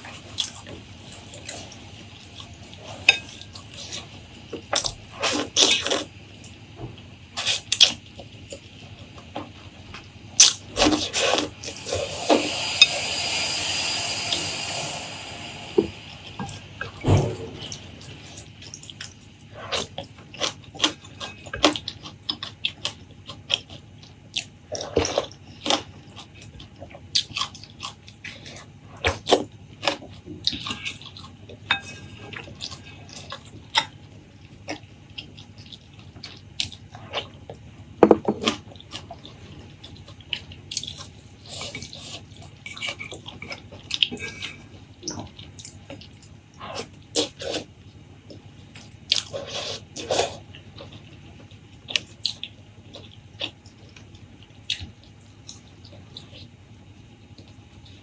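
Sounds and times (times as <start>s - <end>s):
wet chewing and lip-smacking: 17.6s - 31.6s, 38.4s - 58.0s.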